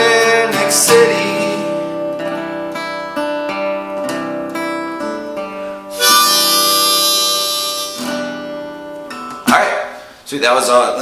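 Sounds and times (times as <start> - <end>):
acoustic guitar strumming: 0.0 - 9.8
harmonica: 5.9 - 8.8.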